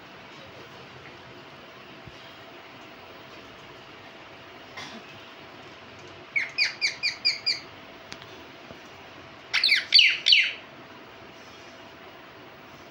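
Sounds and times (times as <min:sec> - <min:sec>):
parakeet chirping and calling: 0:06.3 - 0:07.7, 0:09.5 - 0:10.6.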